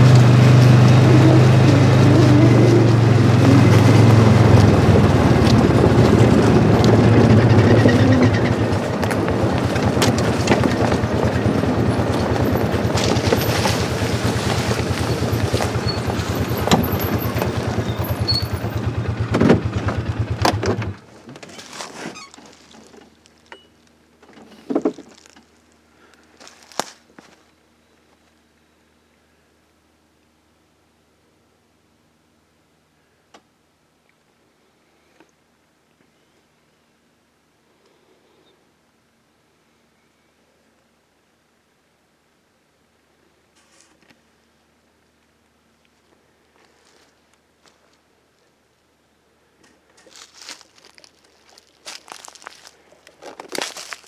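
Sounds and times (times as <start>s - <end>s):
vehicle engine running: 0.0s - 27.4s, 50.0s - 54.0s.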